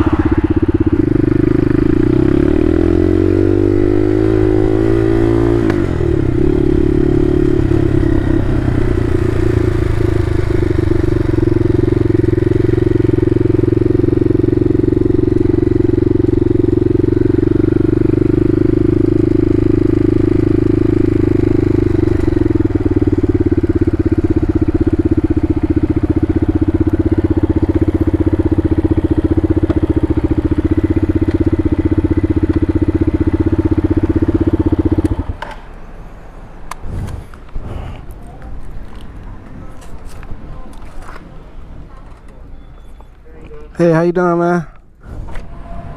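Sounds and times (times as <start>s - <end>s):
motorcycle engine running: 0.0s - 35.4s.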